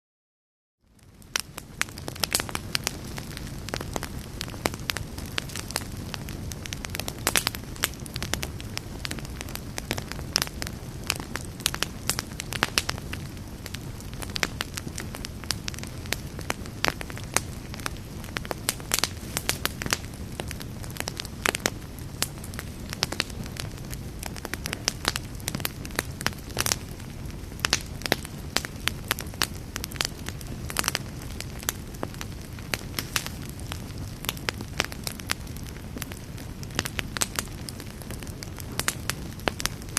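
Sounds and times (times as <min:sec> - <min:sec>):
wood fire crackling and popping: 0:00.9 - 0:39.9.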